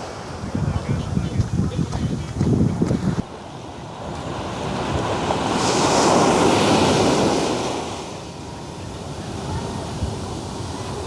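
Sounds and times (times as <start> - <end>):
ocean waves breaking: 0.0 - 11.0
wind buffeting microphone: 0.0 - 11.0.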